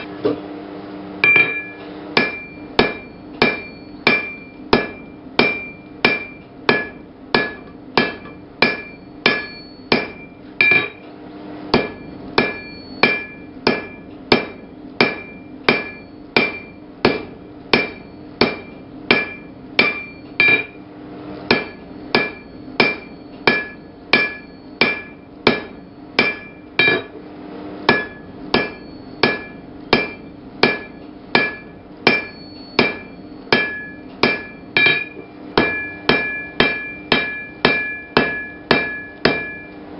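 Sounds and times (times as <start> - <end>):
hammer striking steel on anvil: 1.2 - 11.1, 11.7 - 20.8, 21.5 - 39.9.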